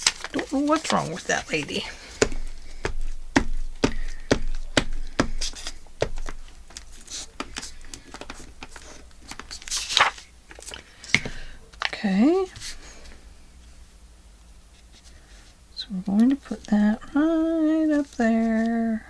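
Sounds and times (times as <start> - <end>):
paper rustling: 0.0 - 11.9, 17.8 - 18.9.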